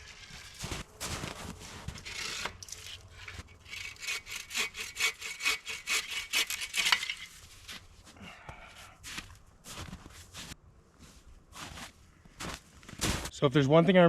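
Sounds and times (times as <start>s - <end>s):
hand saw cutting wood: 0.0s - 7.4s.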